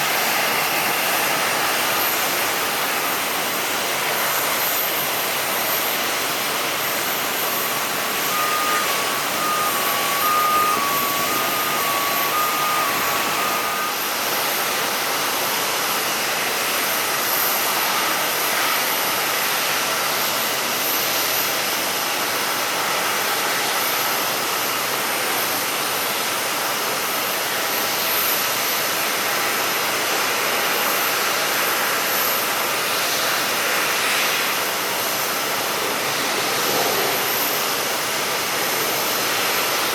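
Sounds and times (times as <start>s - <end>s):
jet engines rushing and whining: 0.0s - 27.5s.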